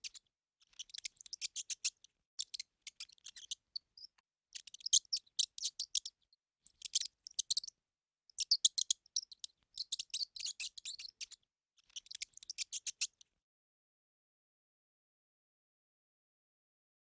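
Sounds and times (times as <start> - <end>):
hamster clicking and crackling: 6.7 - 7.7.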